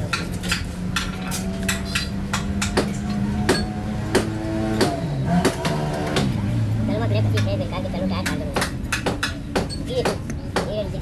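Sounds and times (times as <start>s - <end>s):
hammer striking sheet metal: 0.1s - 6.3s.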